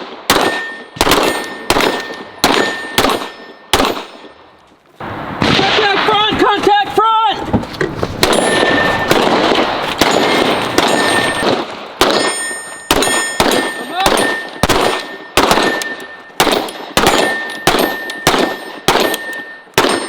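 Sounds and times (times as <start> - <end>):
metallic ring of steel targets: 0.3 - 4.5, 8.3 - 20.0.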